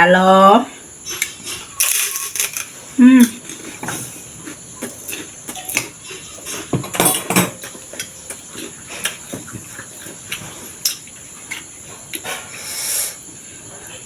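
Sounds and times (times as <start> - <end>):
wet chewing and mouth sounds: 3.3 - 6.7, 7.6 - 12.5.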